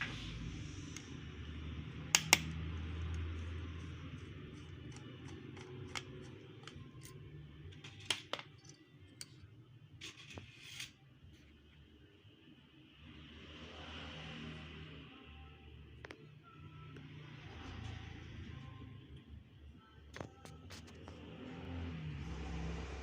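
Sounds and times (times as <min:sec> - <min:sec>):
tools and parts clicking: 0:04.2 - 0:07.2, 0:07.8 - 0:09.4.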